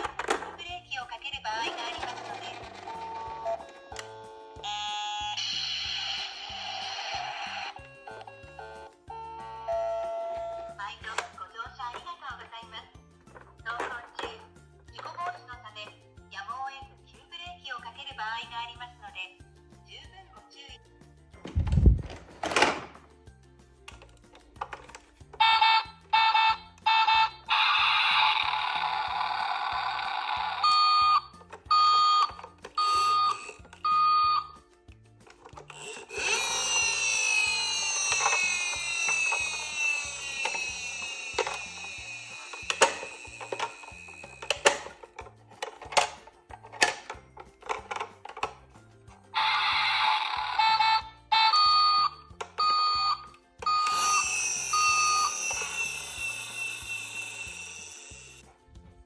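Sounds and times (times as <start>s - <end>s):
light background music: 0.0s - 59.0s
toy siren beeps: 2.9s - 11.3s, 25.4s - 34.6s, 35.7s - 44.9s, 49.3s - 58.4s
short electronic beeps: 50.7s - 56.0s.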